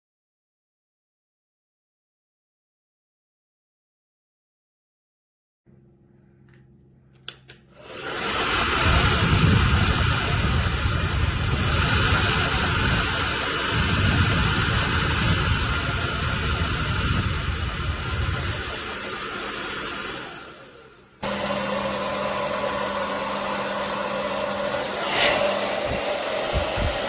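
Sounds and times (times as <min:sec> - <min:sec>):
hair dryer switch clicks: 0:07.2 - 0:07.6
hair dryer blowing: 0:07.7 - 0:27.0
airflow buffeting microphone: 0:07.9 - 0:19.8, 0:24.3 - 0:27.0.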